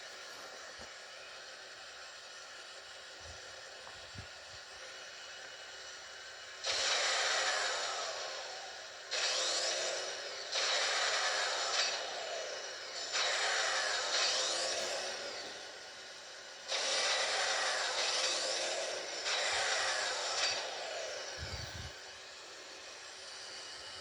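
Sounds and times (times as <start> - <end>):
electric motor whirring: 6.6 - 22.1.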